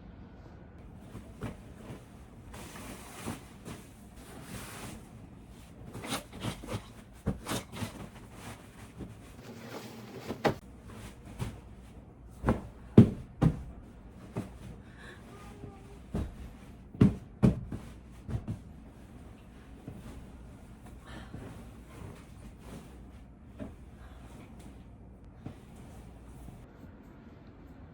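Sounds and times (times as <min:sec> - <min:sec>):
soft rubbing: 0:00.8 - 0:26.7.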